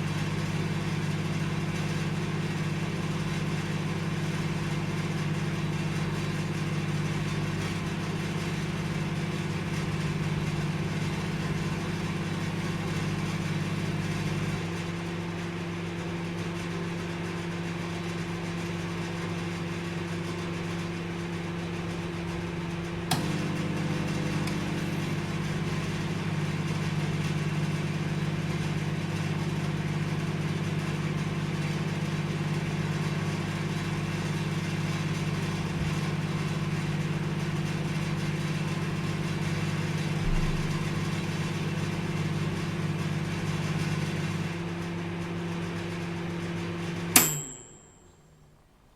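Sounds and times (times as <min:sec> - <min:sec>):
microwave oven humming: 0:00.0 - 0:48.9
microwave click: 0:23.0 - 0:26.0, 0:47.2 - 0:48.2.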